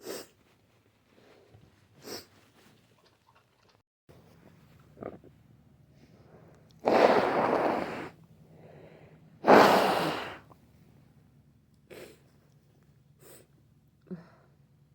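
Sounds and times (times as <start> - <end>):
soft breath: 5.9 - 9.4.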